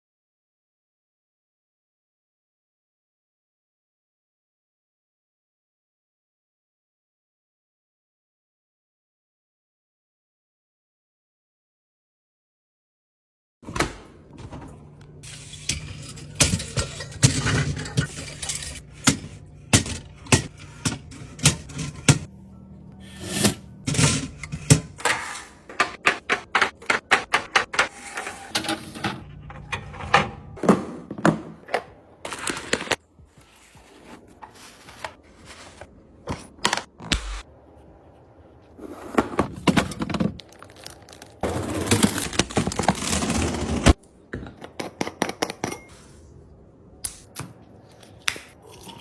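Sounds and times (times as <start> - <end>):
steady low hum: 14.0 - 25.9
household items clicking and knocking: 15.2 - 22.3, 23.9 - 31.7.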